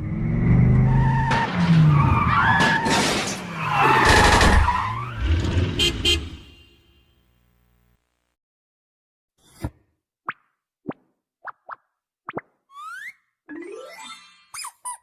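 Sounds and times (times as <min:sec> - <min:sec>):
cartoon sound effects: 0:12.7 - 0:15.0.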